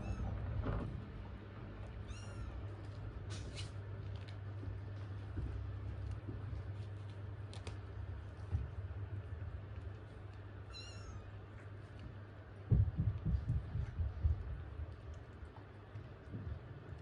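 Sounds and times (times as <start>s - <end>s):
dull bumps and rustling: 12.6s - 14.9s.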